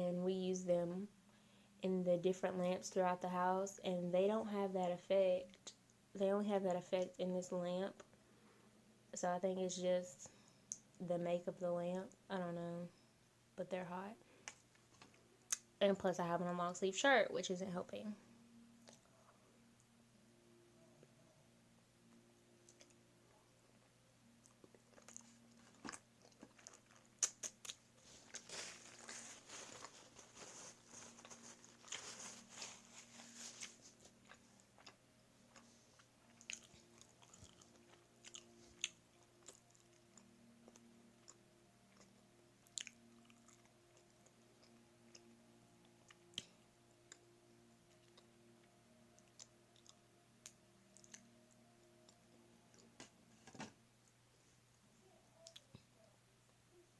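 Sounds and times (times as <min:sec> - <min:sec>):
wet chewing: 0:24.4 - 0:45.3
soft mouth clicks: 0:27.2 - 0:27.8.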